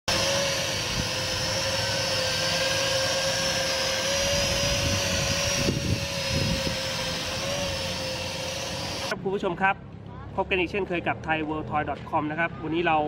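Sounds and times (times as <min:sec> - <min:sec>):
drone propellers humming: 0:00.0 - 0:09.1.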